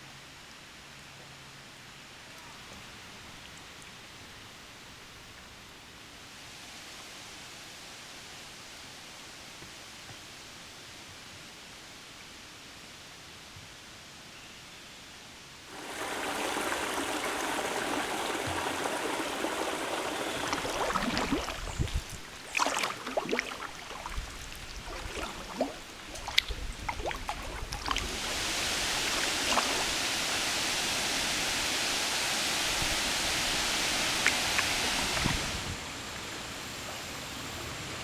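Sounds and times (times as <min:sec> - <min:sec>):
splashes and drips: 0:15.7 - 0:35.8
river water running: 0:15.7 - 0:38.0.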